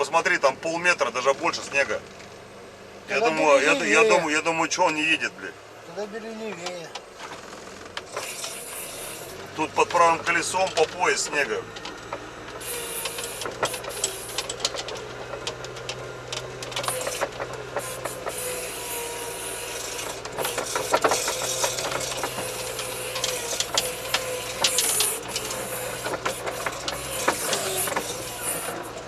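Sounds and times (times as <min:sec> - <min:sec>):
vehicle engine under load: 0:00.0 - 0:29.0
cab clicks and rattles: 0:09.3 - 0:18.7, 0:19.8 - 0:29.0.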